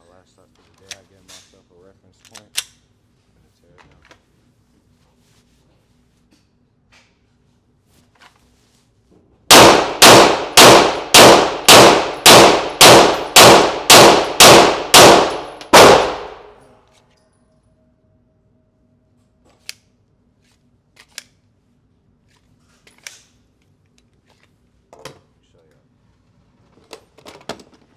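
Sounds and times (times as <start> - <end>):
pistol shots: 9.5 - 16.6.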